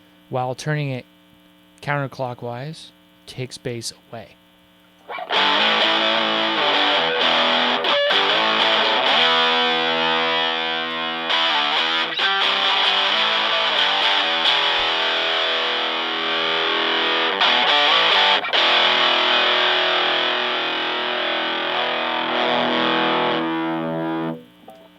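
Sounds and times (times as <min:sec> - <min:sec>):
distorted electric guitar chords: 0:05.0 - 0:24.9.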